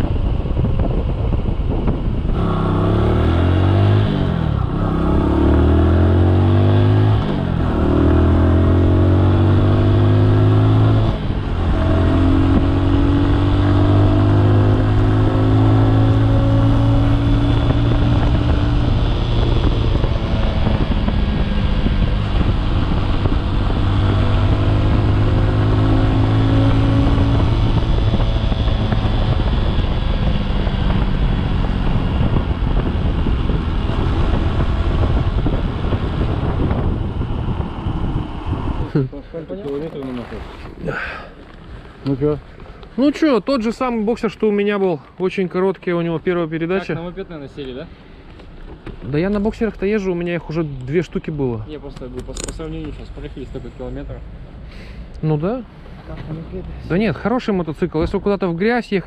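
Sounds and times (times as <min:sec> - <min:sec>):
motorcycle engine accelerating: 0:00.0 - 0:42.8.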